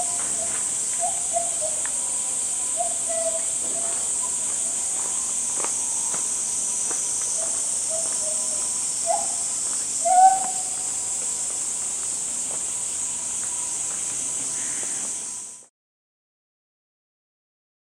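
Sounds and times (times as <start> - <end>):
short hooting calls: 0.0 - 5.2, 7.3 - 11.2
high-pitched insect drone: 0.0 - 15.7.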